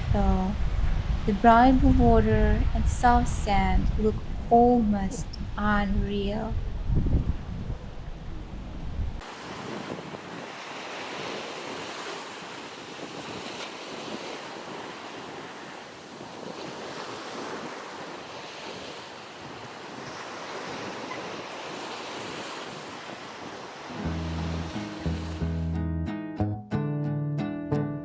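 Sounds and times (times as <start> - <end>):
sea waves washing onto beach: 9.2 - 25.6.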